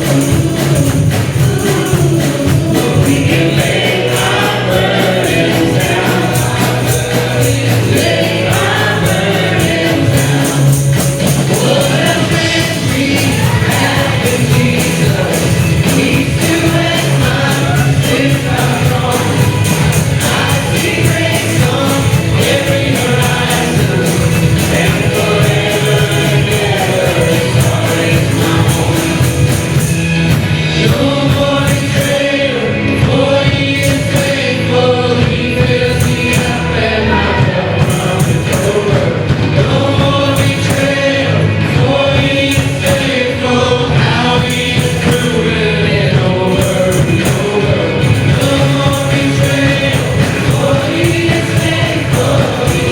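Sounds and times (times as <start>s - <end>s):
instrumental backing with beat: 0.0s - 32.4s, 46.2s - 52.9s
choir singing gospel song: 0.0s - 52.9s.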